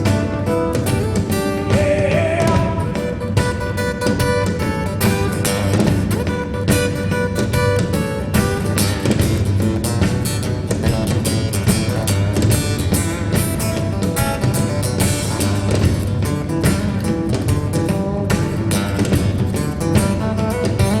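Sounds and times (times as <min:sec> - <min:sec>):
steady drum beat: 0:00.0 - 0:21.0
strummed acoustic guitar: 0:00.0 - 0:21.0
song from a loudspeaker: 0:01.6 - 0:03.2.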